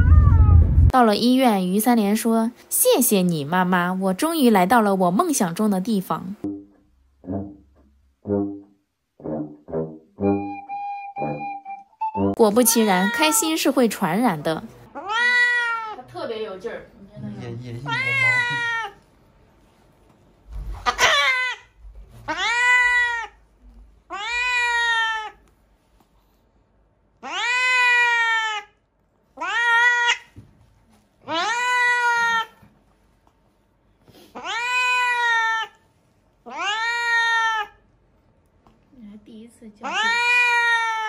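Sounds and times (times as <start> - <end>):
cat meowing loudly: 0.0 - 0.7, 12.6 - 13.7, 15.0 - 16.1, 17.8 - 19.0, 20.9 - 21.7, 22.3 - 23.4, 24.1 - 25.4, 27.2 - 28.8, 29.4 - 30.4, 31.3 - 32.6, 34.4 - 35.8, 36.5 - 37.8, 39.8 - 41.0.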